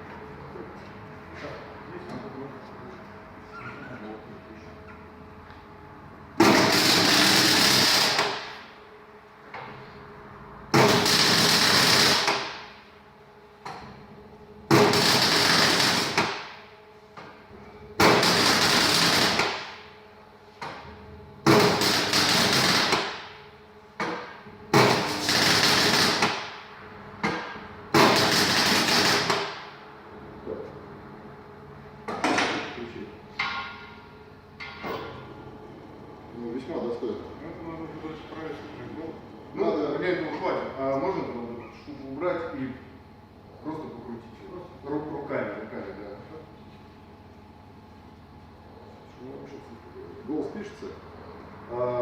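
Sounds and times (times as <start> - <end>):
welding arc crackle: 6.5 - 8.6, 10.8 - 12.6, 14.8 - 16.5, 18.0 - 19.8, 21.5 - 23.2, 24.9 - 26.5, 28.0 - 29.6.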